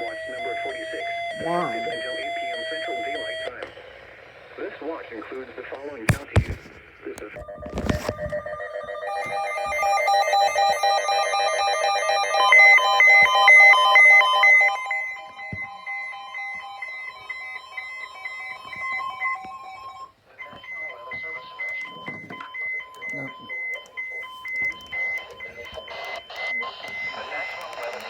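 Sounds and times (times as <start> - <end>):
electronic weather alert beeps: 0.0 - 4.1, 7.4 - 28.0.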